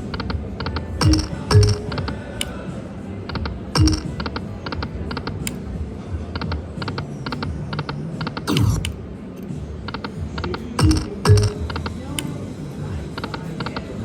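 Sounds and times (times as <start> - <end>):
slot machine electronic ticks: 1.0 - 2.2, 3.8 - 4.3, 10.8 - 11.9.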